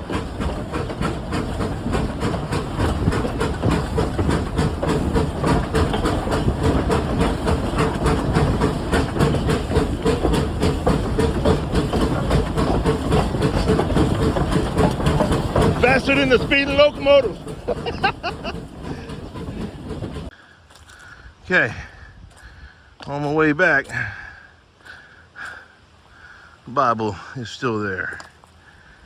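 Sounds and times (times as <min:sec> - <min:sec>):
train wheels clattering on rails: 0:00.0 - 0:20.3.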